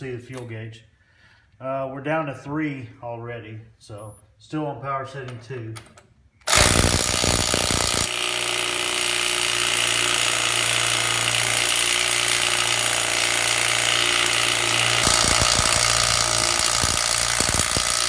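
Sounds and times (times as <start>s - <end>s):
impact wrench hammering: 6.5s - 18.0s.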